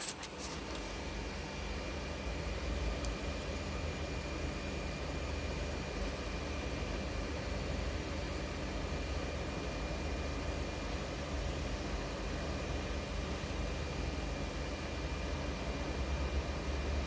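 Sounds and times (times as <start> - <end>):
fan whooshing hiss: 0.0 - 1.2.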